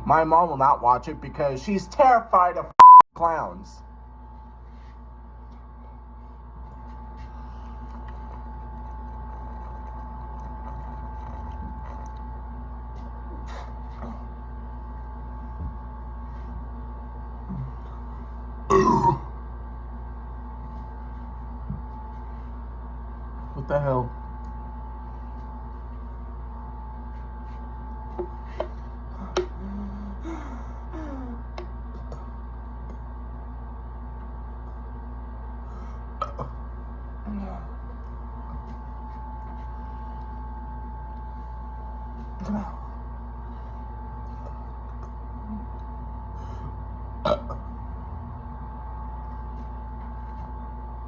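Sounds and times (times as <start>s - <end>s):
low background hum: 0.0s - 51.0s
soft low vocal sound: 17.4s - 18.2s
person burping: 18.7s - 19.3s, 36.2s - 36.6s, 47.2s - 47.7s.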